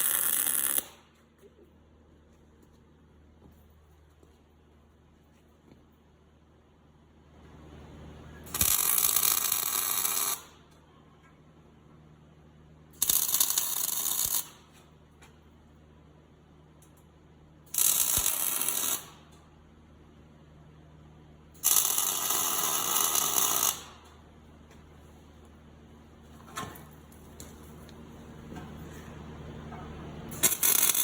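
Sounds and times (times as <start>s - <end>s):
welding arc crackling: 0.0s - 1.0s, 8.5s - 10.6s, 13.0s - 14.7s, 17.7s - 19.2s, 21.6s - 24.0s, 30.4s - 31.0s
steady low hum: 0.0s - 9.5s, 22.2s - 31.0s.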